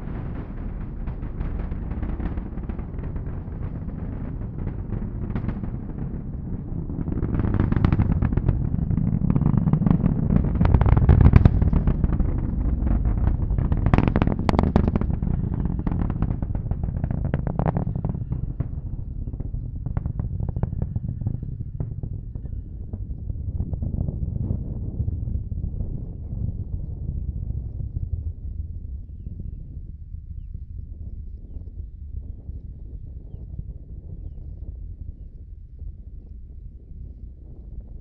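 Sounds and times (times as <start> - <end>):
rocket engines roaring: 0.0 - 29.3.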